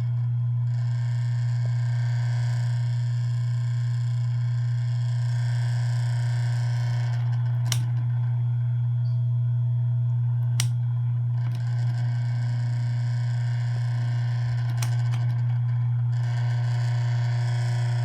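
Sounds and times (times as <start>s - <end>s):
electric fan motor hum: 0.0s - 18.0s
sharp rattling clicks: 7.6s - 8.0s, 10.5s - 10.8s, 14.6s - 15.5s.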